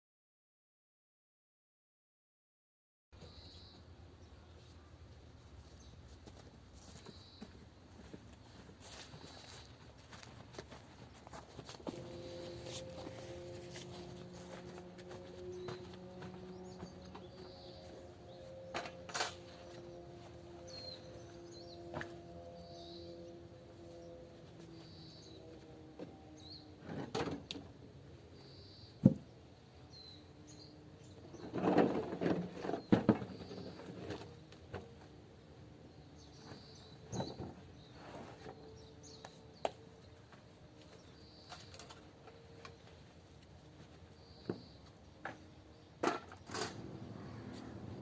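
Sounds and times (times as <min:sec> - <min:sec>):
bird chirping: 0:03.2 - 0:04.7, 0:11.9 - 0:25.6, 0:28.3 - 0:31.6, 0:35.9 - 0:43.0.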